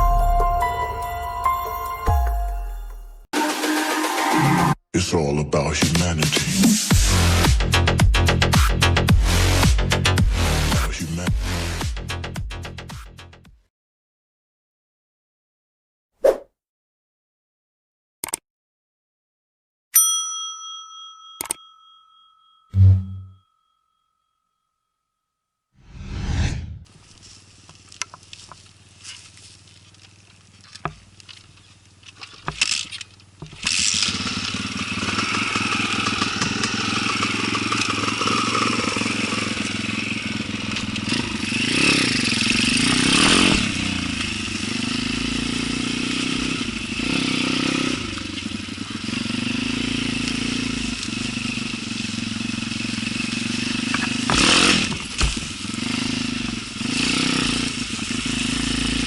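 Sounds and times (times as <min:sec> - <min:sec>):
off-road motorcycle engine revving: 0:06.9 - 0:12.7, 0:28.3 - 0:59.0.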